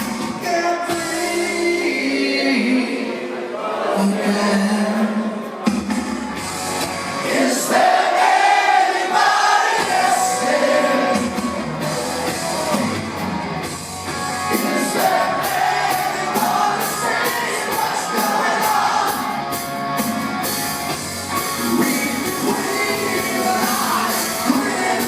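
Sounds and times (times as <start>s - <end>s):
live rock band playing: 0.0s - 2.1s, 5.0s - 25.0s
man singing: 0.1s - 3.3s, 4.0s - 5.6s, 14.5s - 18.9s, 21.4s - 25.0s.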